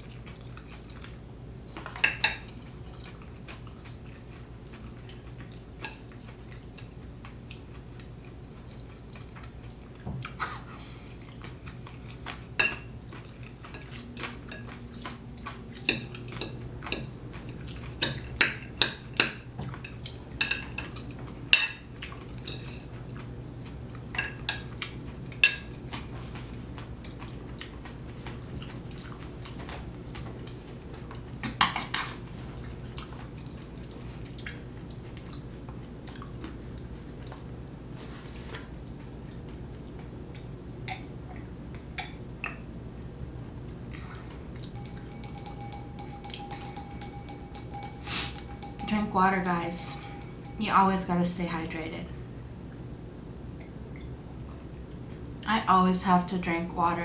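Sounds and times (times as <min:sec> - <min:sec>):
mouth chewing sounds: 0:00.0 - 0:18.8, 0:24.7 - 0:37.9, 0:43.6 - 0:50.6
low steady hum: 0:00.0 - 0:57.0
sharp clicks and clinks: 0:44.7 - 0:50.8.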